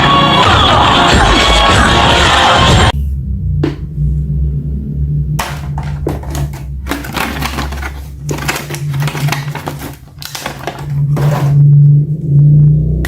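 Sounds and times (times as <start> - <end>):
action figure being handled: 5.4 - 11.6
plastic packaging crinkling: 5.4 - 11.6.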